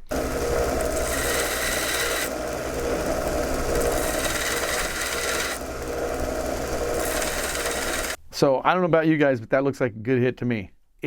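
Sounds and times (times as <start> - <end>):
power tool grinding metal: 0.0 - 8.2.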